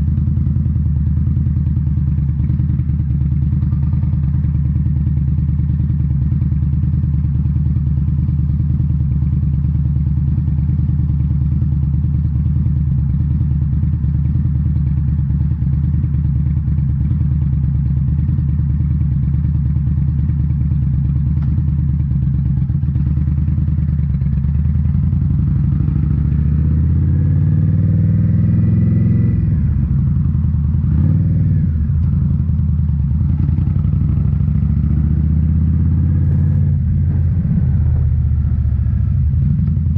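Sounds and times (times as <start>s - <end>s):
motorcycle engine cruising: 0.0s - 39.9s.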